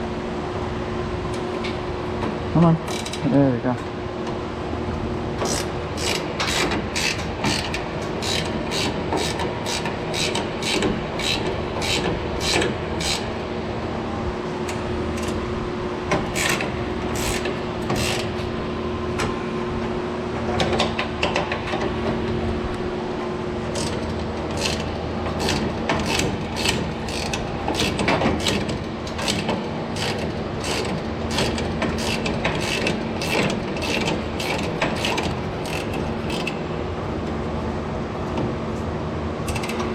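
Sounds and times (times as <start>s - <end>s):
ratchet wrench clicking: 25.4s - 28.6s, 30.0s - 36.5s.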